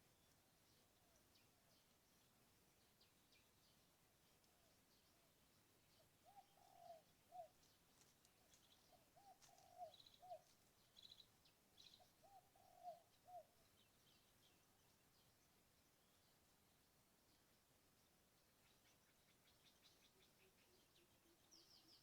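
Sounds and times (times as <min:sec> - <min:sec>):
small birds chirping: 0:00.0 - 0:22.0
dove cooing: 0:05.9 - 0:07.7, 0:08.6 - 0:10.5, 0:11.9 - 0:13.6.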